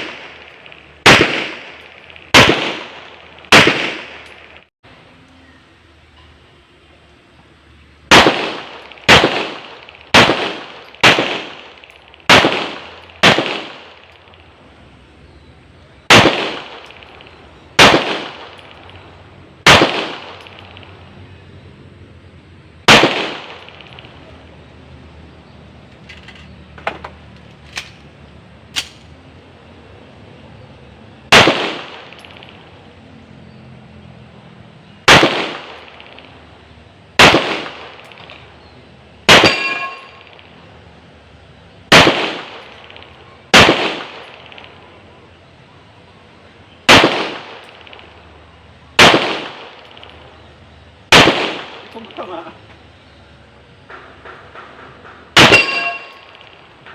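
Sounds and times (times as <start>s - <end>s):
handgun shots with echo: 0.0s - 4.5s, 39.3s - 40.4s, 55.3s - 56.6s.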